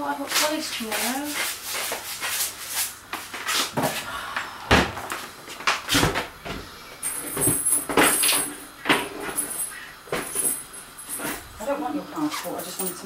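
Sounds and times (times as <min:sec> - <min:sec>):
knocks and thuds of doors shutting: 0:04.7 - 0:05.1.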